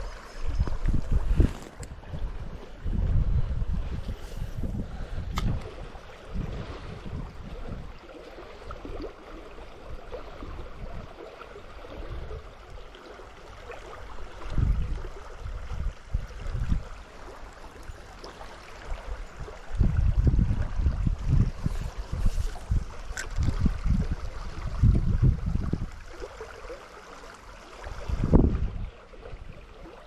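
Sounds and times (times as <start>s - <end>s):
wind buffeting on microphone: 0.0s - 9.1s, 9.7s - 11.2s, 11.8s - 12.8s, 14.2s - 17.1s, 18.8s - 26.3s, 27.8s - 30.0s
stream water running: 0.0s - 30.0s.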